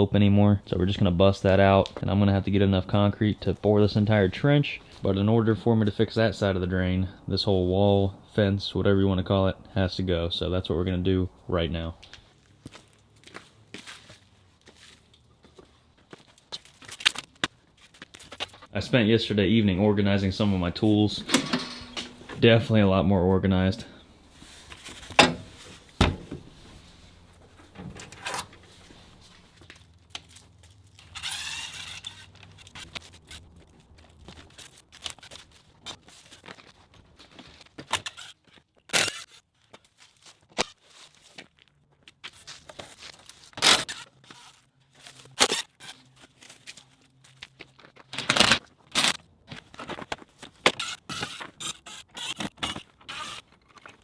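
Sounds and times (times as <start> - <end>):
hand tools clattering: 21.2 - 22.4.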